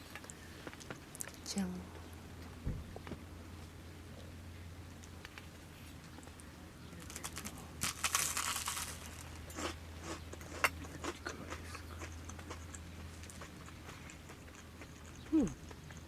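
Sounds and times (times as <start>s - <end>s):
crunching toasted bread: 5.0s - 16.0s.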